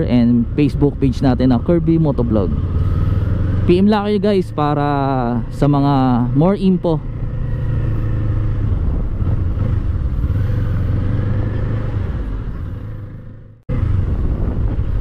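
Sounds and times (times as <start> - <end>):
motorcycle engine running: 0.0 - 15.0.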